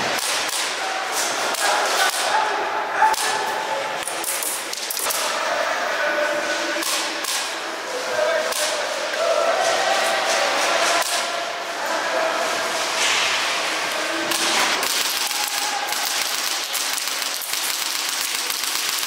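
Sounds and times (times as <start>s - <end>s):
airsoft guns firing: 14.3s - 19.0s.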